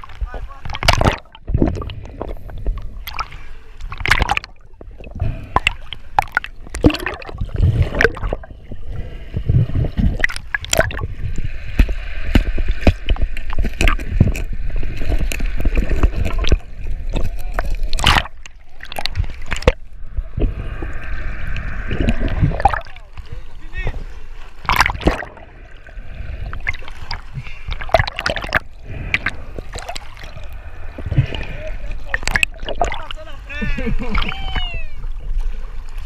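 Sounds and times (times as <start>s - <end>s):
water sloshing and gurgling: 0.0s - 36.0s
low rumble: 18.4s - 24.4s.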